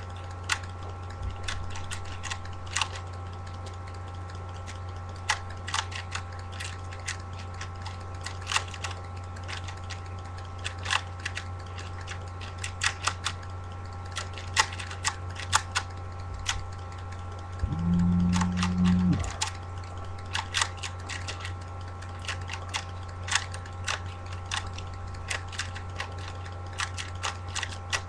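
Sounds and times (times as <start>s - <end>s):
low electrical hum: 0.0s - 28.0s
puzzle cube clicking: 17.6s - 19.5s.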